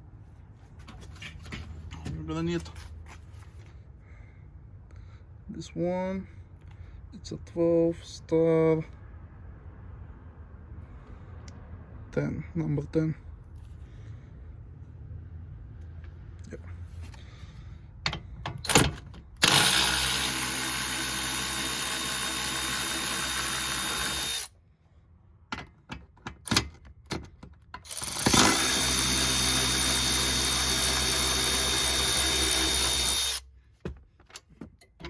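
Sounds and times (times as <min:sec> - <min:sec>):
tool handling clicks and knocks: 0:18.0 - 0:19.5, 0:25.5 - 0:27.9, 0:33.8 - 0:35.0
power drill running: 0:19.4 - 0:24.5, 0:27.9 - 0:33.5.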